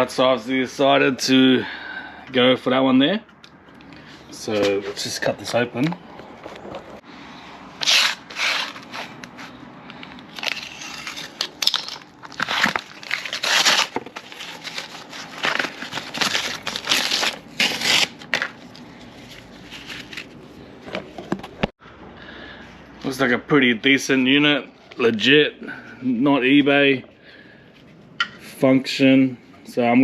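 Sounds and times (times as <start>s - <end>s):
packaging rustling and tearing: 7.8s - 20.4s.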